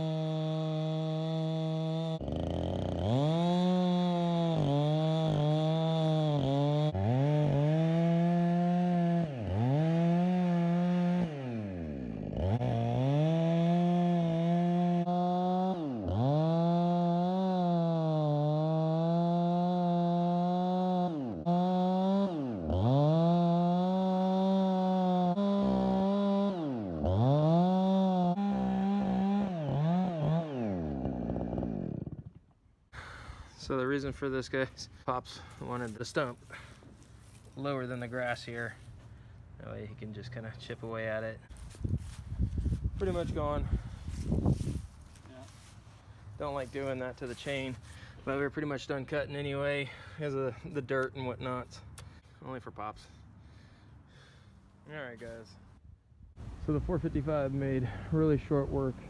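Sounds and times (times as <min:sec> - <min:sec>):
chainsaw cutting: 0:00.0 - 0:55.8.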